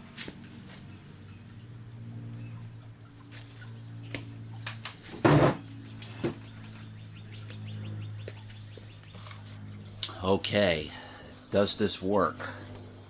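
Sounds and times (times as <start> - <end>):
dehumidifier humming: 0.0 - 13.0
knocks and clunks: 5.2 - 5.6.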